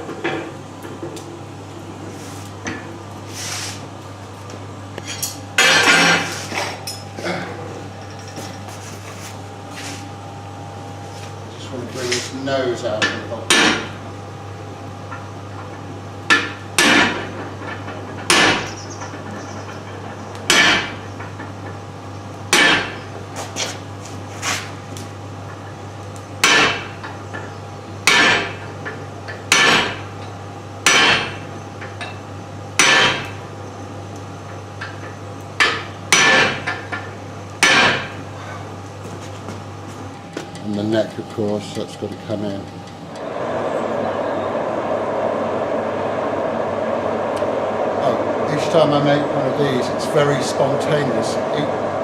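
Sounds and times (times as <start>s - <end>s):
steady low hum: 0.0s - 52.0s
hammer striking steel: 13.0s - 14.0s, 16.3s - 17.3s, 18.3s - 18.7s, 20.5s - 21.0s, 22.5s - 23.0s, 26.4s - 26.9s, 28.1s - 28.6s, 30.9s - 31.4s, 32.8s - 33.3s, 35.6s - 36.8s, 37.6s - 38.2s.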